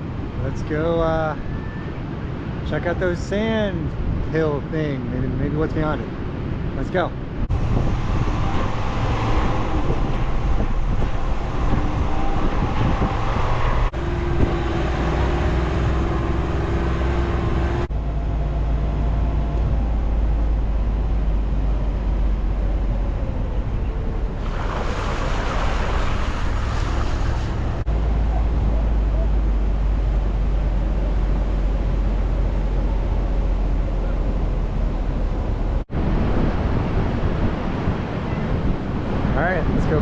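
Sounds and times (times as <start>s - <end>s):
road noise: 0.0s - 40.0s
truck engine rumble: 7.4s - 35.9s.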